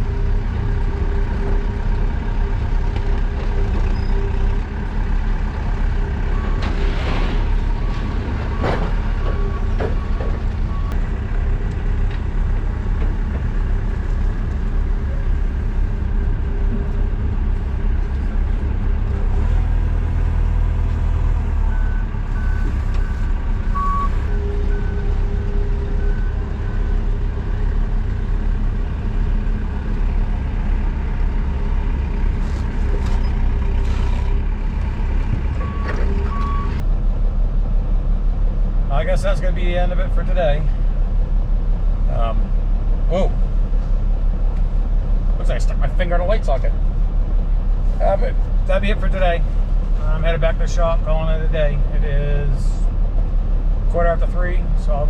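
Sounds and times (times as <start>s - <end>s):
truck engine running: 0.0s - 55.0s
backup alarm beeps: 21.7s - 25.1s, 35.6s - 36.8s.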